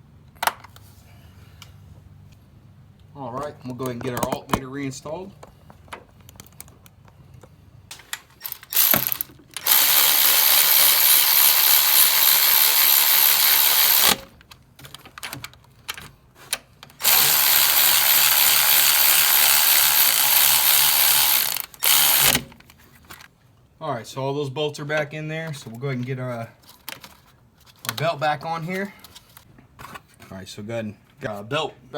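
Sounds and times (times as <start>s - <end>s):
power ratchet running: 8.4s - 14.2s, 17.0s - 22.5s.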